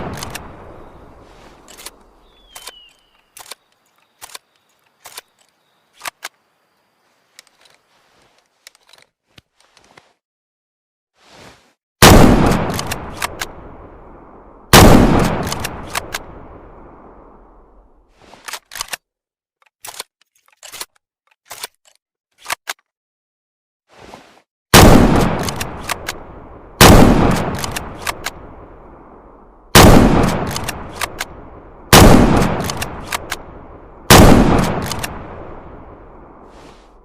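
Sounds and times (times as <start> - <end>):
rifle bolt clicks: 0.0 - 0.5, 1.7 - 6.3, 12.5 - 13.6, 15.2 - 16.3, 25.4 - 26.2, 27.3 - 28.4, 29.8 - 31.4, 32.4 - 33.5, 34.1 - 35.3
rifle shots echoing: 0.0 - 1.2, 12.0 - 17.7, 24.8 - 36.5.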